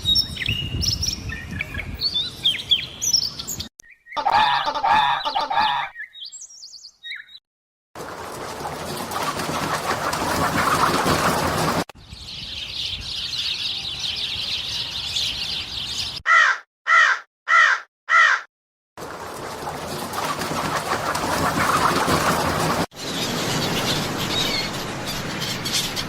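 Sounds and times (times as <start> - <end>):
crow cawing: 16.2 - 18.5.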